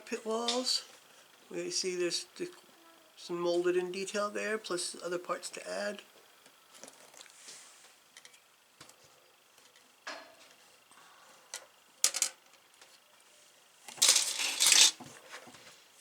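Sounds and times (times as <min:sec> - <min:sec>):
plastic rustling and crinkling: 0:13.8 - 0:15.9.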